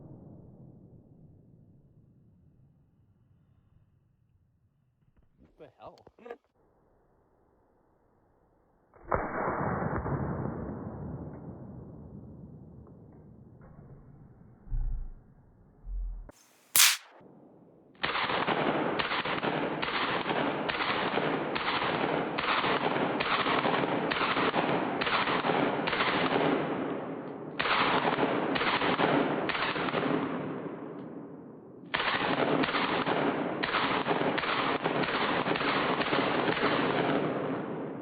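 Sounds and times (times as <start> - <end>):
rifle shots: 16.8 - 17.0.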